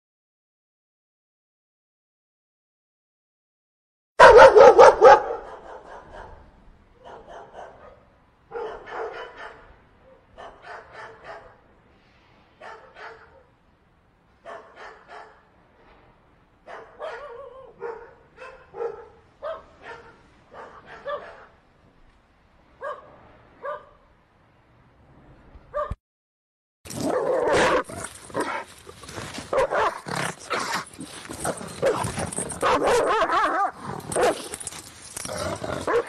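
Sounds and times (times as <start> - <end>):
dogs barking and yipping: 4.2 - 6.4, 7.0 - 11.6, 12.6 - 13.5, 14.4 - 15.5, 16.7 - 21.6, 22.8 - 24.0, 26.9 - 36.0.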